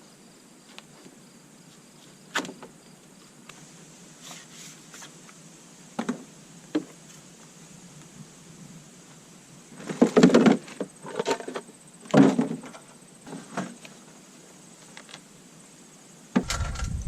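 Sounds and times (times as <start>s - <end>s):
low rumble: 16.4s - 17.0s
objects knocking and rattling: 16.4s - 17.0s.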